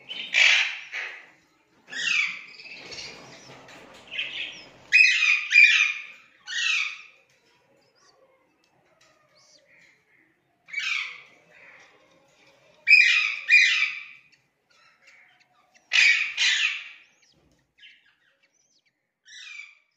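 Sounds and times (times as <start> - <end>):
budgerigars calling: 0.1 - 1.3, 4.1 - 7.1, 12.9 - 18.1.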